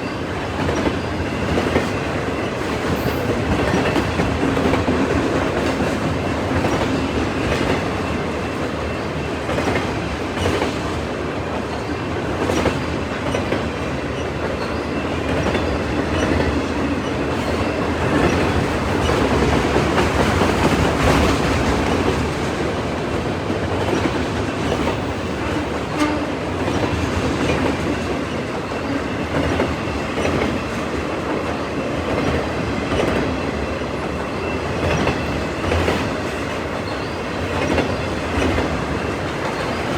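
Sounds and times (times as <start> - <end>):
freight train rumbling: 0.0 - 39.9
wheels clacking over rail joints: 0.4 - 39.9.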